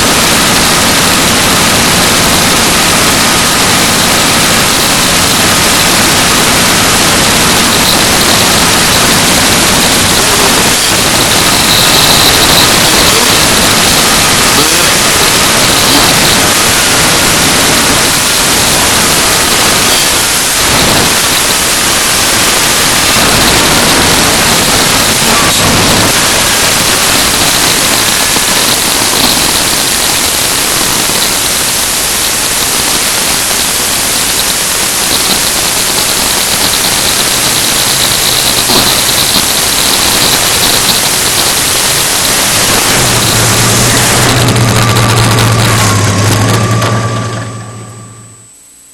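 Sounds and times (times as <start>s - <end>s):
loud static hiss: 0.0s - 48.9s.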